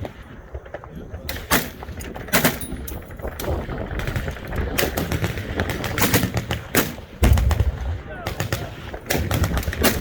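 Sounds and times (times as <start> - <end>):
low rumble of distant firing: 0.0 - 10.0
gunshots: 3.4 - 10.0.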